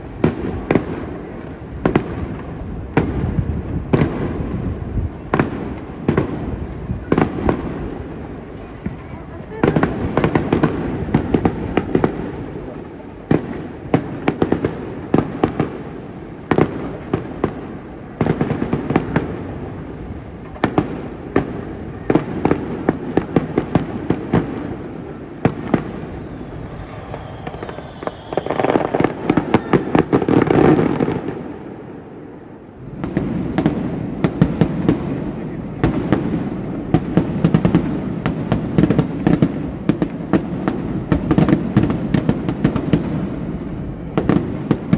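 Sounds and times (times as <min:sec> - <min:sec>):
firework crackling: 0:00.0 - 0:44.9
falling firework whistle: 0:25.1 - 0:31.2, 0:32.8 - 0:44.9
fireworks shells bursting: 0:32.8 - 0:44.9.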